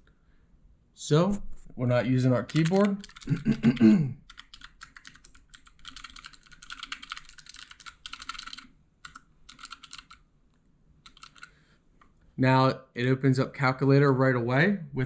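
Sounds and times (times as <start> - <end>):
mechanical keyboard key clicks: 11.1 - 11.5.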